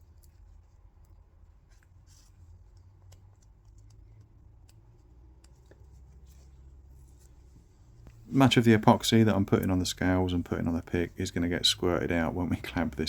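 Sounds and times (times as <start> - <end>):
small clicks and light scraping: 0.0 - 8.3
low room hum: 0.0 - 13.0.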